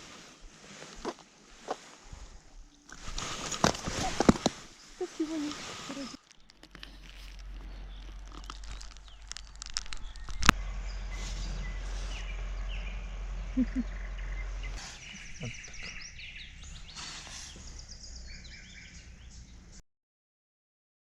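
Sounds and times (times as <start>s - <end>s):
songbirds chirping and trilling: 0.2s - 19.8s
low rumble: 5.9s - 19.8s.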